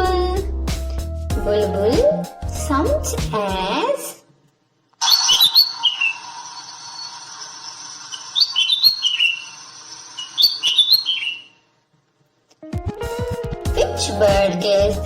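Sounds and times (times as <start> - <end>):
bird singing whistled notes: 5.0 - 6.3, 8.1 - 9.6, 10.2 - 11.6.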